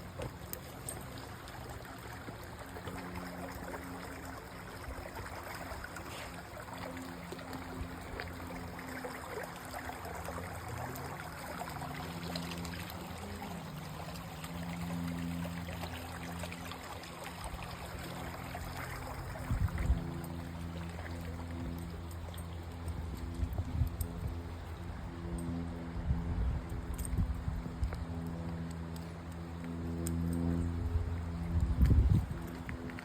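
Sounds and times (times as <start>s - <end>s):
creek babbling over rocks: 0.0s - 23.5s
faint low hum: 0.0s - 33.0s.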